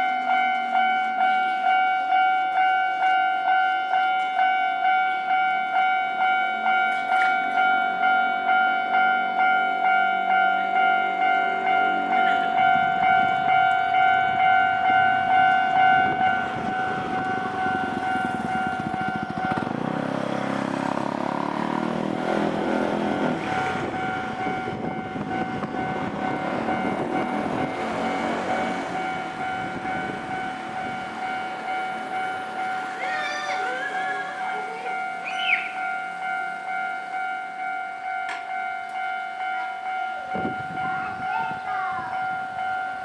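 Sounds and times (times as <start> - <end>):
level crossing bell ringing: 0.0 - 43.0
train wheels clattering on rails: 10.7 - 35.5.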